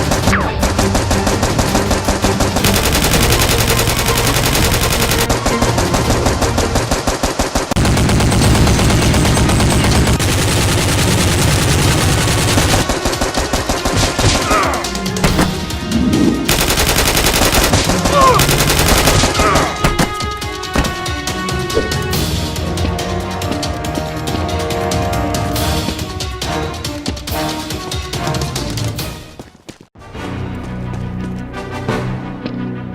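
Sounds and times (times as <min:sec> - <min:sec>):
automatic gunfire: 0:00.0 - 0:14.4, 0:16.5 - 0:20.1.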